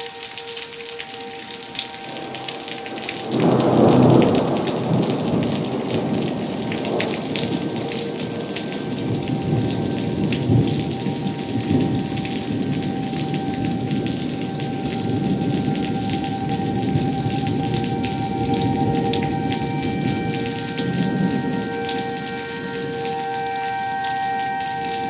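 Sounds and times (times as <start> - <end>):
rain falling: 0.0 - 25.0
thunder rumbling: 2.1 - 21.6.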